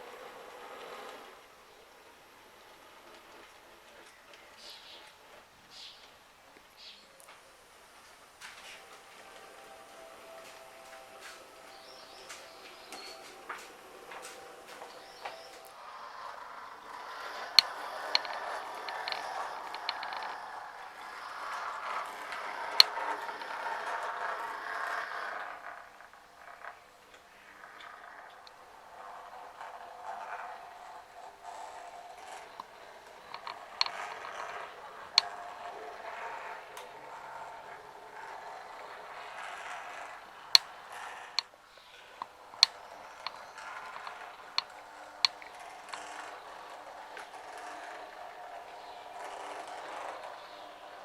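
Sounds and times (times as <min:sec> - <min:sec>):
model train motor whirring: 0:00.0 - 0:51.0
sharp clicks: 0:17.5 - 0:20.4.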